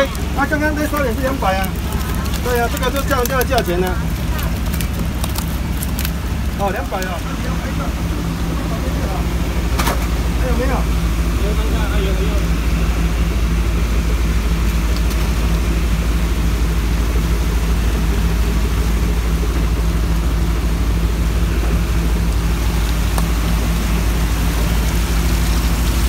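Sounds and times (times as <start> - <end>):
boat diesel engine rumble: 0.0 - 26.0
hiss of running water: 21.2 - 26.0.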